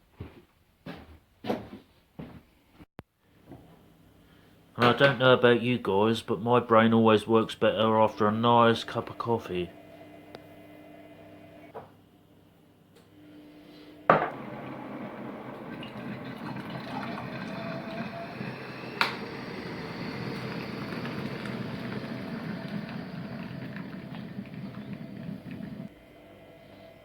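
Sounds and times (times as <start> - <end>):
hot liquid bubbling and pouring: 14.3 - 25.9.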